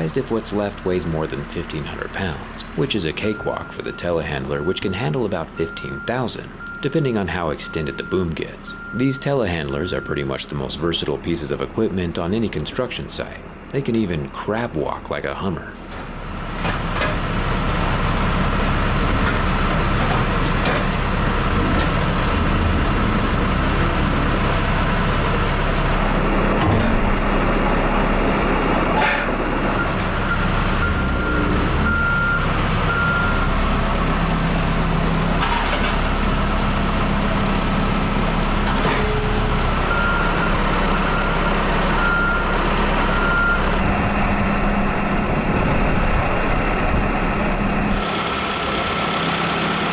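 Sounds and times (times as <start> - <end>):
diesel engine running: 0.0 - 49.9
reversing alarm beeping: 3.0 - 10.4, 29.7 - 33.6, 39.0 - 43.8.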